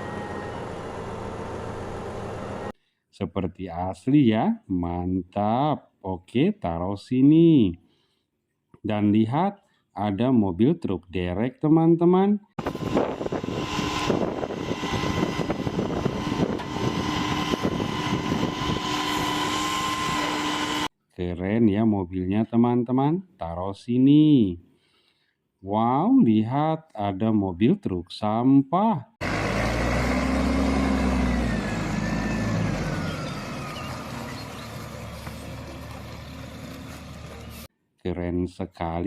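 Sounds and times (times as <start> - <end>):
engine-like drone with whine: 0.0 - 2.7, 12.6 - 20.9, 29.2 - 37.7
faint high whine gliding downward: 12.6 - 20.9.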